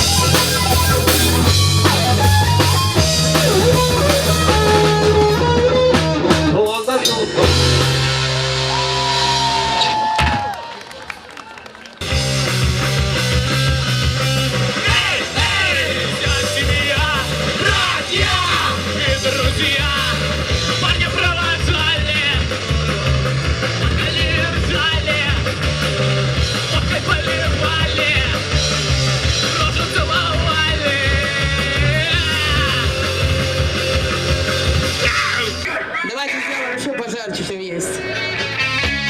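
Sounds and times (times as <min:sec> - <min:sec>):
punk rock song: 0:00.0 - 0:10.5, 0:12.0 - 0:39.0
person yelling and singing: 0:14.8 - 0:22.5, 0:26.7 - 0:28.4, 0:29.5 - 0:33.1, 0:35.0 - 0:38.5.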